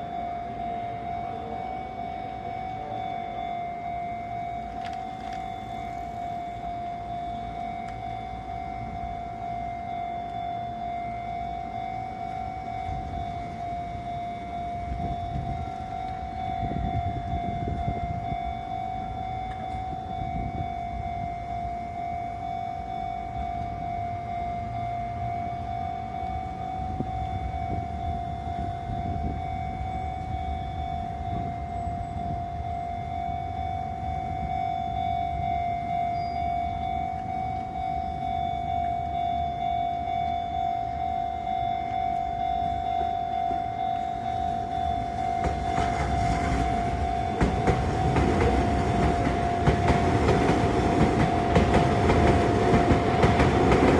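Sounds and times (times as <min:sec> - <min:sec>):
level crossing warning tone: 0:00.0 - 0:53.9
train rumbling past: 0:00.0 - 0:53.9.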